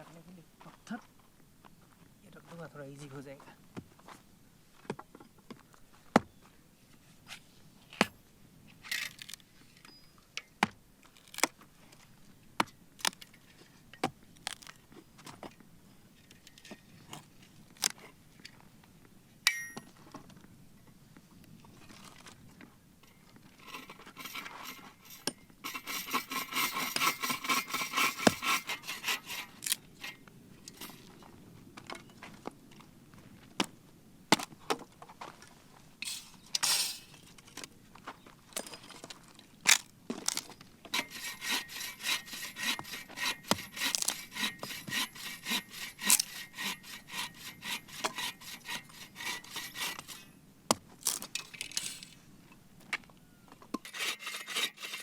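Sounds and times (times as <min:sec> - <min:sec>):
hand saw cutting wood: 0:23.6 - 0:31.0, 0:40.9 - 0:50.3, 0:53.8 - 0:55.0.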